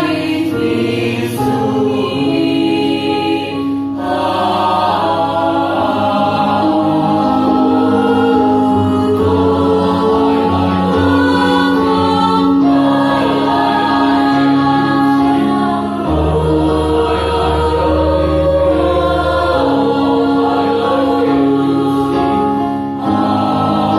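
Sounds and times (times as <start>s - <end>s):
choir singing: 0.0s - 23.9s.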